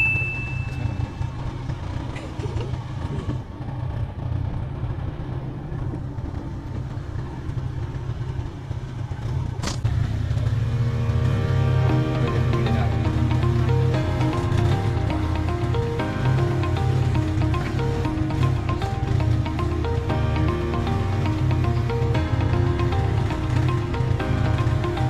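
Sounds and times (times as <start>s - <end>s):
atv engine rumbling: 9.2s - 25.0s
music: 10.6s - 25.0s.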